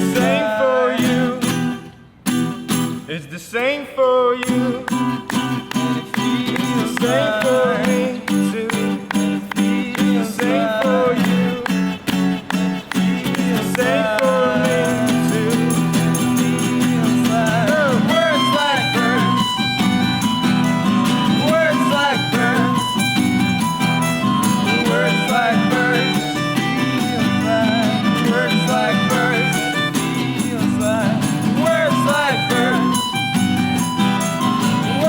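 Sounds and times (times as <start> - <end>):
band music with guitars and drums: 0.0 - 3.0, 4.5 - 35.0.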